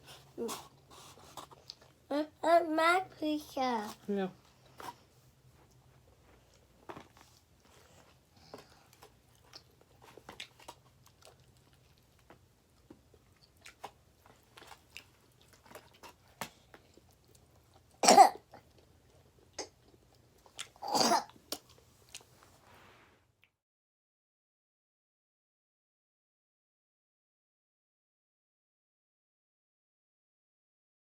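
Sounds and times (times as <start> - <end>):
quiet chewing: 0.0 - 2.1, 3.8 - 22.6
loud coughs: 18.0 - 18.4, 20.8 - 21.3.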